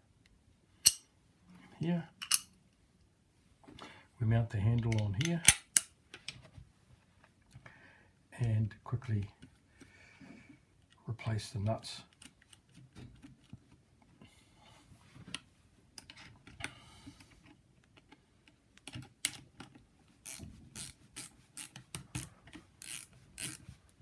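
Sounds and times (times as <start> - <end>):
socket ratchet: 20.2 - 23.6.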